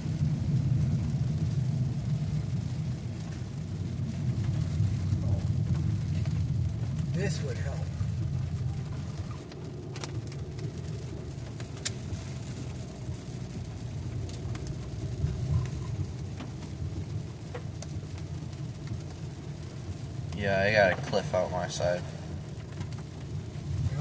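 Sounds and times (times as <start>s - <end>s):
car road and engine hum: 0.0s - 24.0s.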